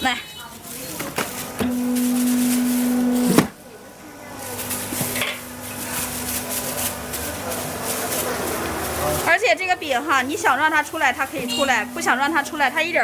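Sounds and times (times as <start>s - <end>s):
electric machine humming: 1.4s - 7.8s, 9.9s - 13.0s.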